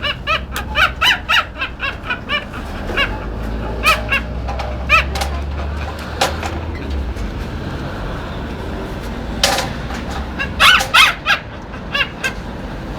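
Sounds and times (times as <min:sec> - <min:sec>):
dog squeaking squeals: 0:10.2 - 0:12.3.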